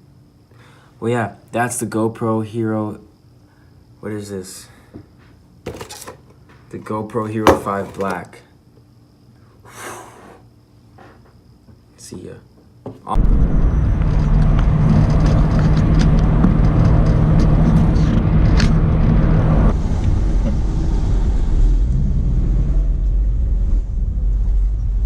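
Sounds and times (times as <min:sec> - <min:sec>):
car engine rumble: 0:13.2 - 0:25.0
road noise: 0:13.2 - 0:25.0.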